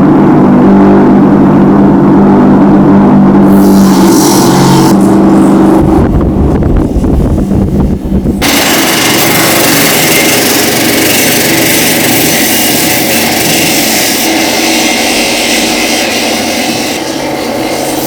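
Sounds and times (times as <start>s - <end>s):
low rumbling machine: 0.0s - 18.0s
power tool hissing: 3.4s - 5.8s, 8.4s - 18.0s.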